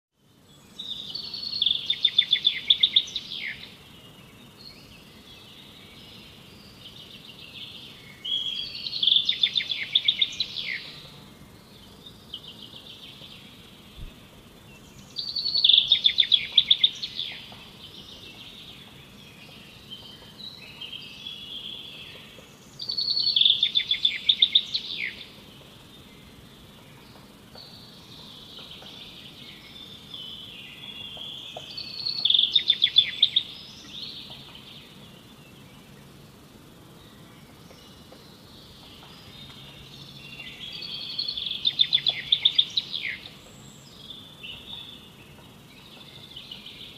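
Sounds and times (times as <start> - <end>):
faint steady background noise: 0.2 - 46.9
songbird singing: 0.2 - 46.9.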